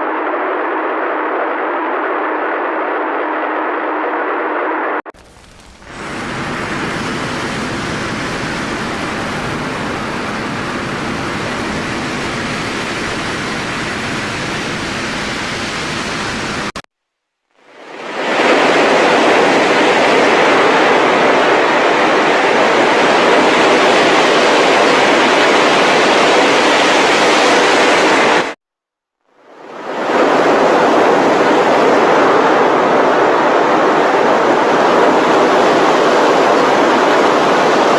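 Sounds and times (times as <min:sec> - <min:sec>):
static hiss: 0:05.2 - 0:16.8.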